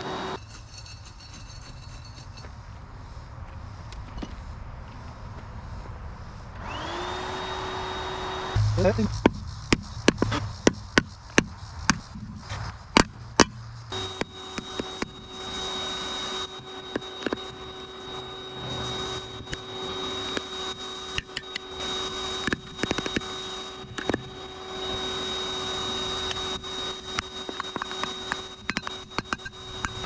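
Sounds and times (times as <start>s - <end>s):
electric blower whining: 0.0s - 0.4s, 6.6s - 12.2s, 13.0s - 30.0s.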